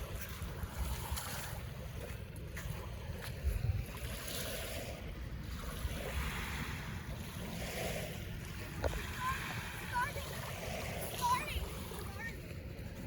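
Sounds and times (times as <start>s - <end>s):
water washing: 0.0s - 13.0s
wind rumbling on microphone: 0.0s - 13.0s.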